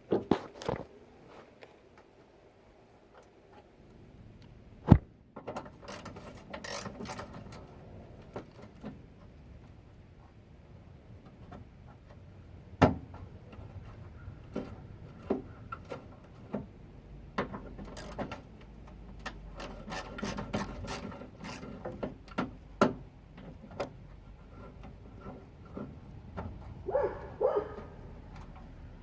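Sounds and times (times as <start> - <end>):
plastic car parts knocking: 17.3 - 24.0.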